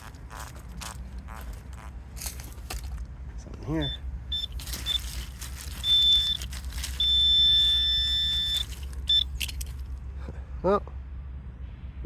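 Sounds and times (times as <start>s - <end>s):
metal detector beeping: 3.7s - 9.7s.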